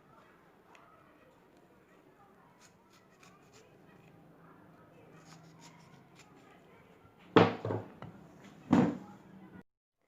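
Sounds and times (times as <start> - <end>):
hard items knocking on work surface: 7.4 - 8.1, 8.7 - 9.0.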